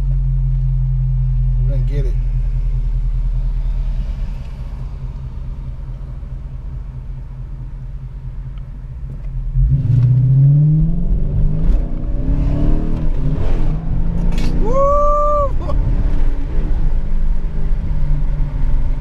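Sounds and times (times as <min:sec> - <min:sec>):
car engine idling: 0:00.0 - 0:15.8
car engine accelerating hard: 0:09.0 - 0:19.0.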